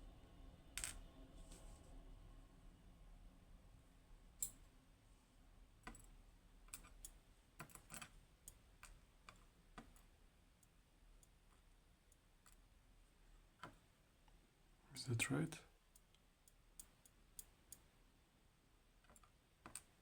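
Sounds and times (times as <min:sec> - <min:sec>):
small metal pins clicking: 0:05.8 - 0:11.4.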